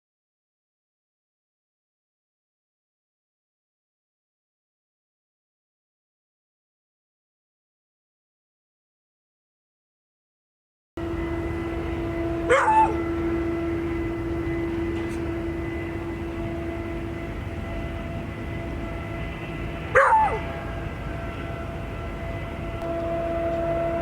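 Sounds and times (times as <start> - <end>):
machine hum: 11.0 - 24.0
dog barking: 12.5 - 13.0, 19.9 - 20.5.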